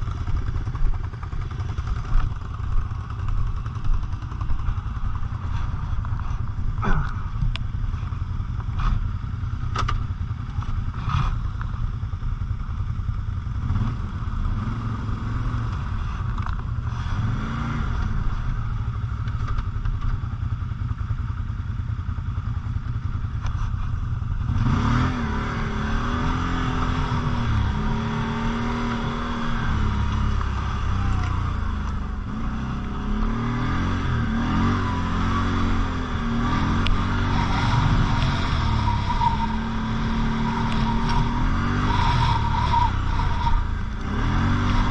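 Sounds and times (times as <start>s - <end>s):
quad bike engine revving: 13.1s - 20.1s, 23.5s - 44.9s.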